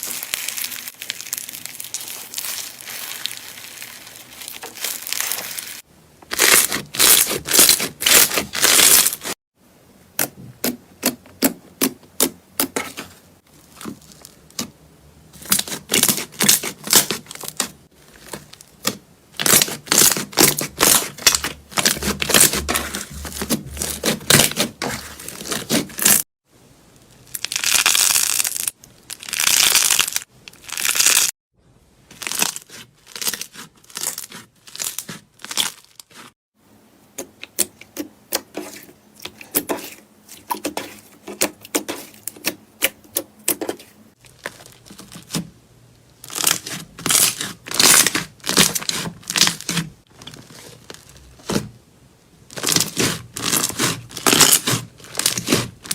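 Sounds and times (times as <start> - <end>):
slime crackling and popping: 0.0 - 9.3, 27.2 - 31.3, 52.5 - 55.7.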